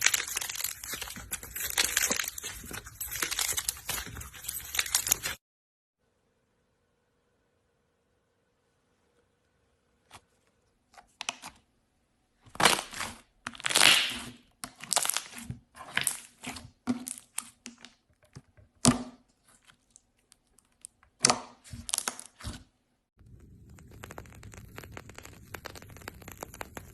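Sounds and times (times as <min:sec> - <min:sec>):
brittle material crackling and crunching: 0:00.0 - 0:05.4, 0:12.6 - 0:16.4, 0:23.2 - 0:26.9.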